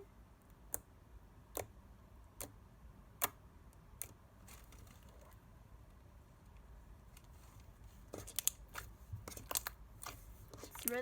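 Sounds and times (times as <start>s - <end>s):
sharp slime clicks: 0.6s - 4.2s.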